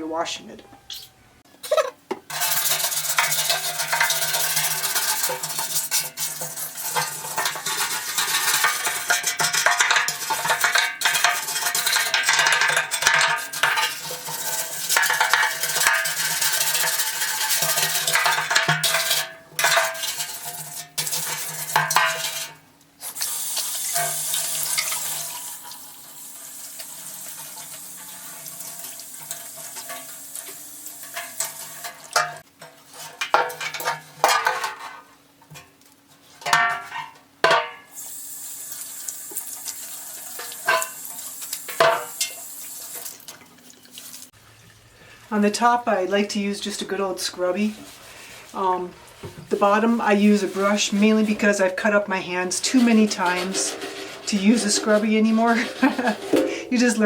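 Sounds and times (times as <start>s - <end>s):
scratchy scrubbing strokes: 47.4s - 57.0s.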